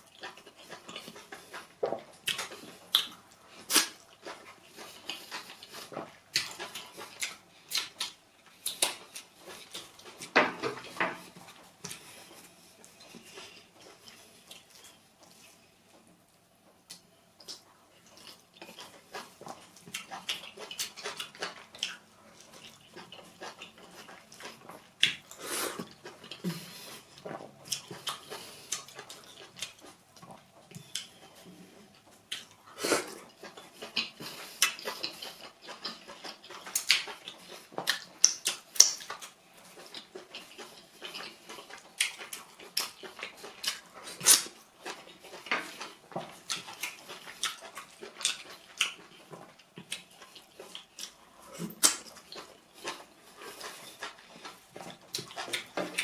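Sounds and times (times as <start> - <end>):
wet chewing and lip-smacking: 0.0 - 15.6, 16.8 - 56.0.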